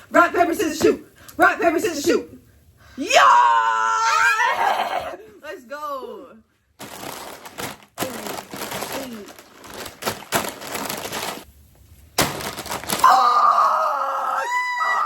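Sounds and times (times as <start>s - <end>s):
plastic snack bag crackling: 6.8s - 13.2s.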